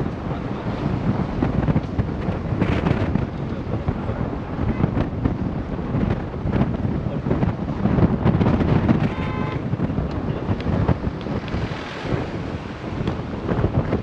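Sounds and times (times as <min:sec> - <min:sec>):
vehicle rumble: 0:00.0 - 0:14.0
wind buffeting microphone: 0:00.0 - 0:14.0
horn toot: 0:08.9 - 0:09.8.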